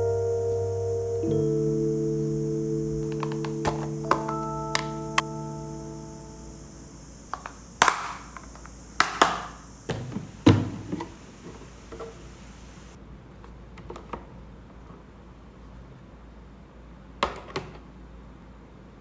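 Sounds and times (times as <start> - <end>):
steady hiss: 0.0 - 13.0.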